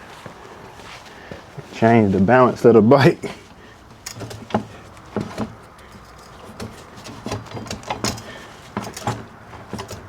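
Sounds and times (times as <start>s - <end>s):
metal clicks and knocks: 3.9s - 10.0s.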